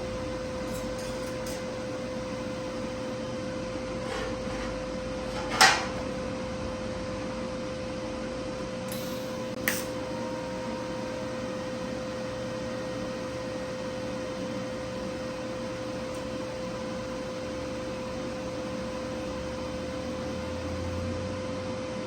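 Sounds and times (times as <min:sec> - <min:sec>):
welder electrical hum and hiss: 0:00.0 - 0:22.0
constant whining tone: 0:08.9 - 0:21.3.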